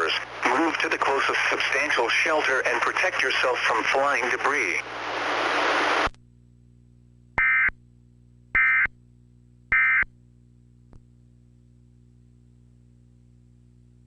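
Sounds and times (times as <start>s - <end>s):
static hiss: 0.0s - 6.1s
data tone squawks: 7.4s - 7.7s, 8.6s - 8.9s, 9.7s - 10.1s.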